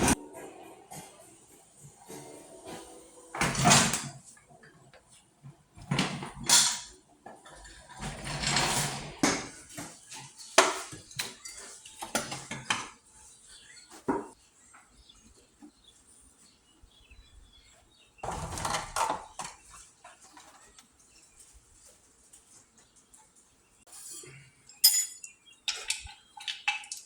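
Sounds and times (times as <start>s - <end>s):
metal tools clanking: 24.0s - 26.2s.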